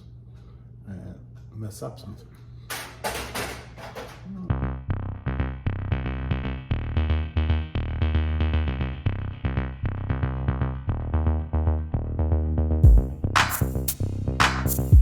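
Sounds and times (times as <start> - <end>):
electronic music with drum machine: 12.8 - 15.0.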